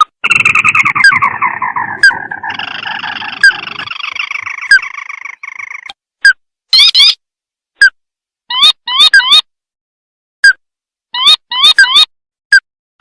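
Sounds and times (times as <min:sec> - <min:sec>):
crake trilling call: 0:00.0 - 0:05.9.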